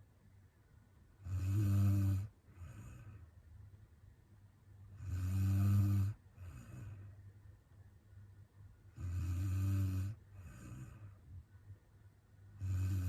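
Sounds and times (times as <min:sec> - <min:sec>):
woman snoring: 0:01.2 - 0:03.2, 0:05.0 - 0:07.0, 0:09.0 - 0:11.1, 0:12.6 - 0:13.0
soft breath: 0:02.2 - 0:03.5, 0:05.8 - 0:07.5, 0:10.0 - 0:11.6.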